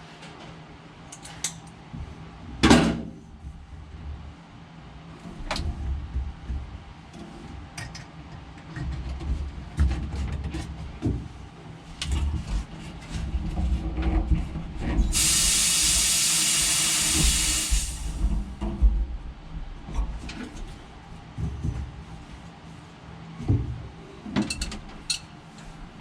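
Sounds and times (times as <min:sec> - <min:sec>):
compressed air hissing: 0:15.1 - 0:18.3.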